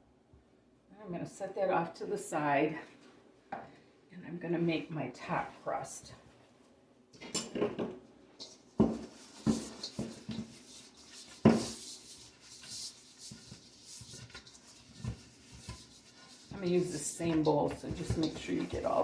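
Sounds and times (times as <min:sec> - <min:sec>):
dishes and utensils clattering: 0:07.2 - 0:10.6, 0:14.2 - 0:19.0.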